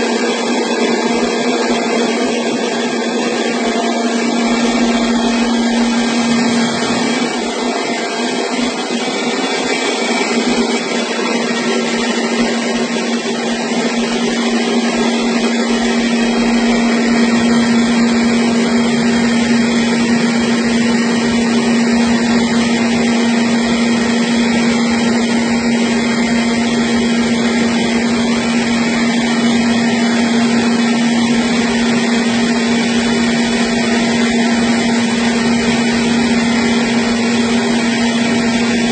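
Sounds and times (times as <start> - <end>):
rice milling machine running: 0.0 - 38.9
deep rumble: 4.1 - 7.5.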